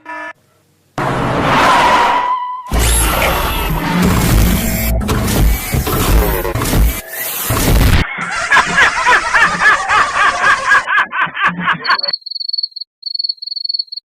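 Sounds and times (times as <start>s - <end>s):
loud burst of sound: 1.0s - 8.0s
rhythmic snickering laugh: 8.0s - 12.1s
cricket chirping: 11.8s - 14.0s.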